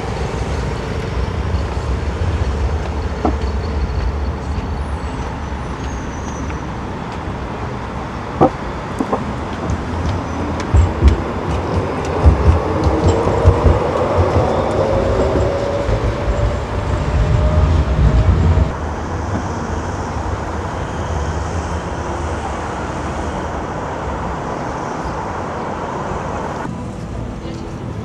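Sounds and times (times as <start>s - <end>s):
train passing with rumble: 0.0s - 28.0s
steady quieter hum: 8.4s - 20.2s.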